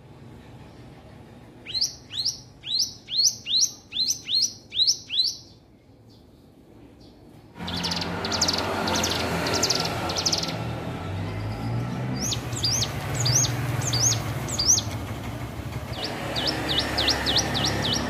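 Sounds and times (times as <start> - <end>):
bird trilled bursts: 7.6 - 10.8, 12.2 - 18.0.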